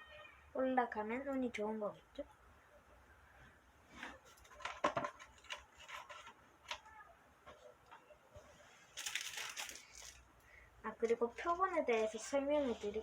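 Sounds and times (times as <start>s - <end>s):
crackly rustling: 3.5s - 13.0s.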